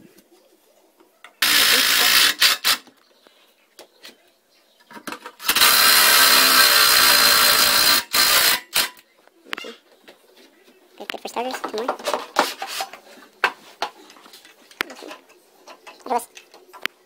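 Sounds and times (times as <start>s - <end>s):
power drill driving screws: 1.4s - 2.9s, 5.4s - 9.0s.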